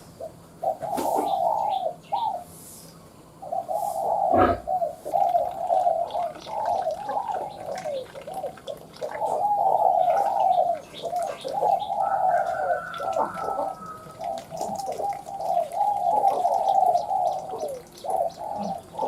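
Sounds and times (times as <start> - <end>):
dove cooing: 0.1 - 2.5, 3.4 - 19.0
thin high steady tone: 12.0 - 14.7.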